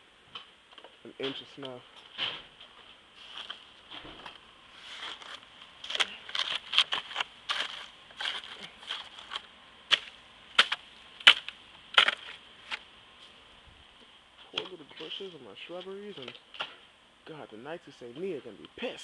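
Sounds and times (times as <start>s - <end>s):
footsteps crunching in snow: 2.7s - 10.1s.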